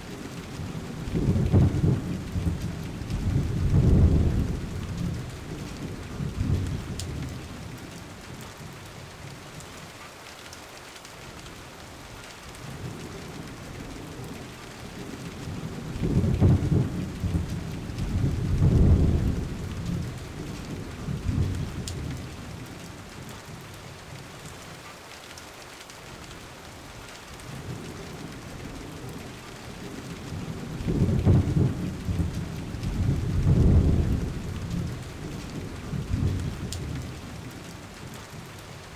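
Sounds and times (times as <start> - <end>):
steady rain: 0.0 - 38.9
low rolling thunder: 0.2 - 7.8, 12.7 - 22.6, 27.6 - 38.1.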